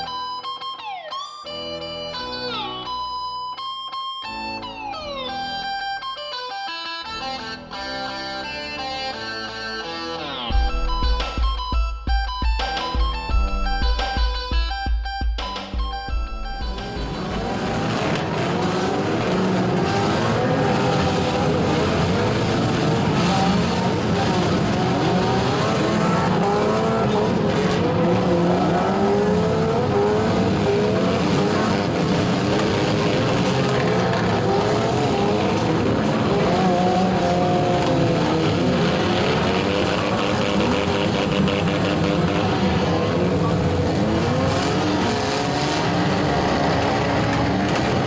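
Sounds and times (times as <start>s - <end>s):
car engines revving: 16.5s - 48.0s.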